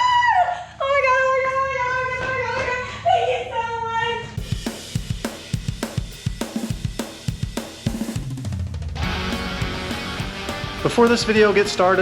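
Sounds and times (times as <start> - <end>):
drum kit beat: 4.4 - 12.0.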